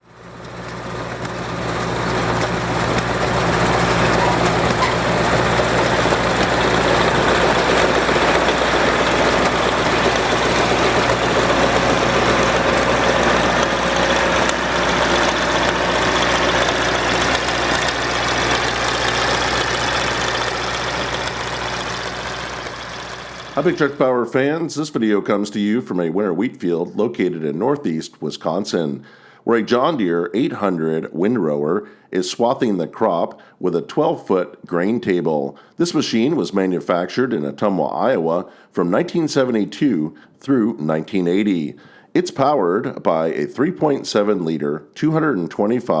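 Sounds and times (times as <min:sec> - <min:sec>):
farm machine engine running: 0:00.0 - 0:24.1
mechanical clatter: 0:00.3 - 0:23.8.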